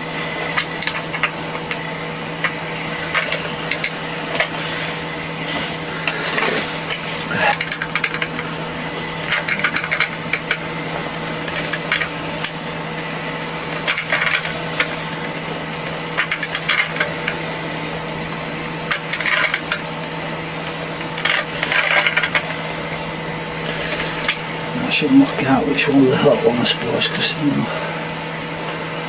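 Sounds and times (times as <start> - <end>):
steady background hum: 0.0 - 29.0
small parts and tools clattering: 0.4 - 5.0, 6.0 - 8.6, 9.2 - 10.8, 11.4 - 12.6, 13.7 - 17.4, 18.9 - 20.1, 21.0 - 22.8, 23.6 - 24.5.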